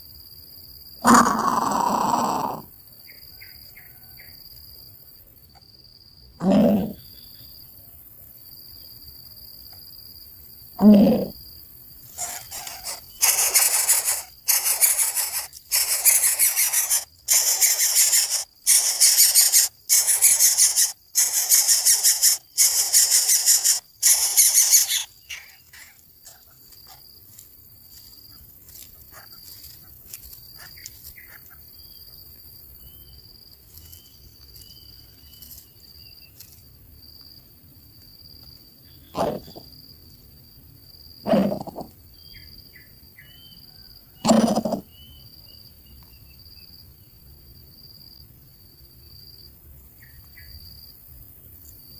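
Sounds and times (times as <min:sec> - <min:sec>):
faint chirps: 0:06.4 - 0:09.8, 0:10.5 - 0:27.0, 0:41.2 - 0:47.3, 0:49.9 - 0:50.8
insect pulsing trill: 0:10.6 - 0:32.2
nestlings screeching begging calls: 0:12.2 - 0:26.0.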